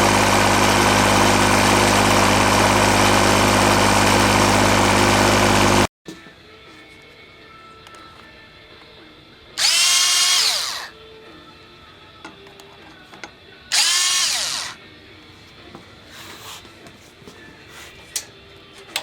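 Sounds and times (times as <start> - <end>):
power drill motor whine: 9.6 - 10.9, 13.7 - 14.8.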